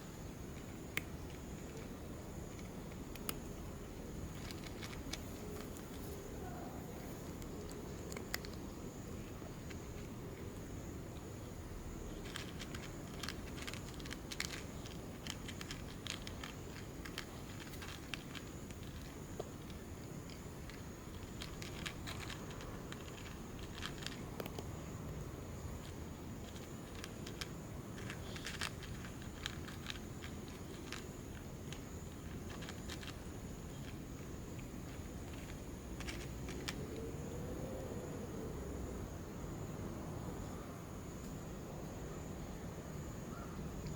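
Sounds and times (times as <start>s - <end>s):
steady low background noise: 0.0s - 43.9s
cat chewing food crunching: 0.5s - 6.3s, 6.9s - 11.3s, 11.9s - 36.8s.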